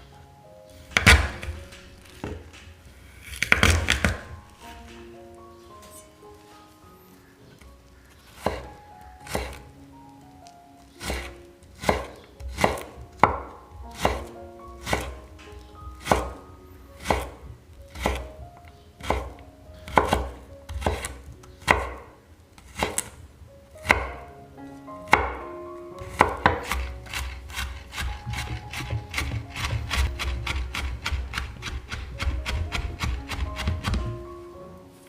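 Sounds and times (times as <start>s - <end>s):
faint background music: 0.0s - 35.0s
knife chopping on cutting board: 0.9s - 1.6s, 3.2s - 4.3s, 8.4s - 9.6s, 11.0s - 15.2s, 16.0s - 16.4s, 17.0s - 18.3s, 19.0s - 22.0s, 22.6s - 23.2s, 23.8s - 24.2s, 26.0s - 34.2s.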